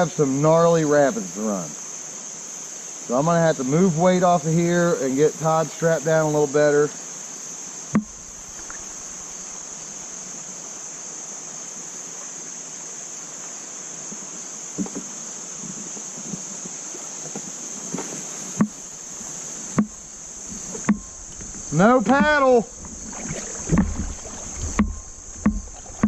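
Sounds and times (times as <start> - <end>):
insects chirring: 0.0 - 26.0
sharp knocks: 8.0 - 9.2, 19.7 - 26.0.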